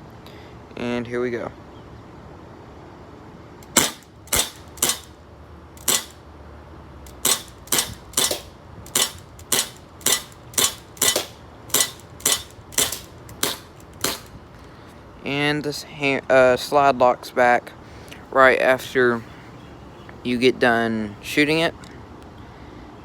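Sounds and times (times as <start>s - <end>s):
airsoft pistol shots: 3.6s - 5.2s, 5.8s - 6.2s, 7.1s - 14.3s.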